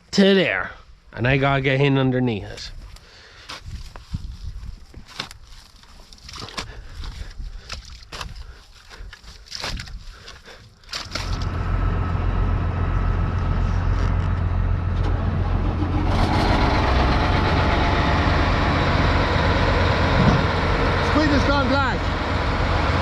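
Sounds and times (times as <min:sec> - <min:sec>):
tractor diesel engine running: 0:11.0 - 0:23.0.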